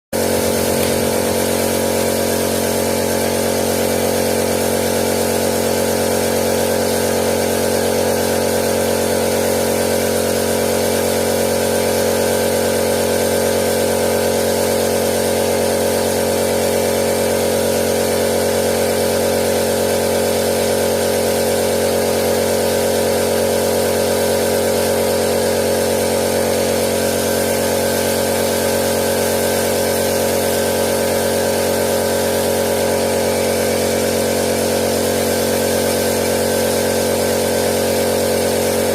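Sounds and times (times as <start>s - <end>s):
paint sprayer motor hum: 0.2s - 38.9s.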